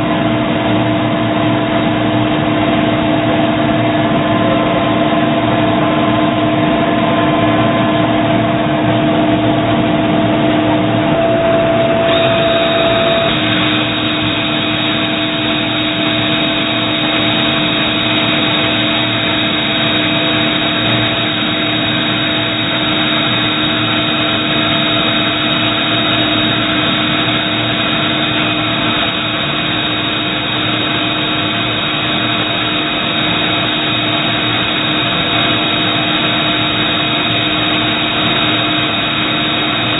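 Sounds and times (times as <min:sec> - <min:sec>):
lathe machine hum: 0:00.0 - 0:39.9
held machine tones: 0:11.1 - 0:39.9
machine hiss: 0:12.1 - 0:39.9.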